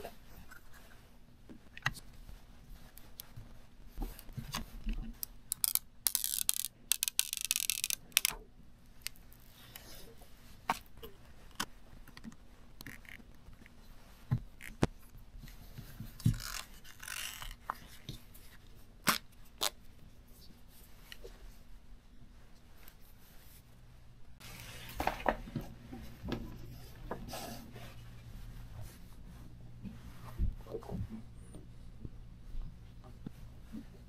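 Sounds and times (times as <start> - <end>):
plastic tearing: 16.3 - 17.6.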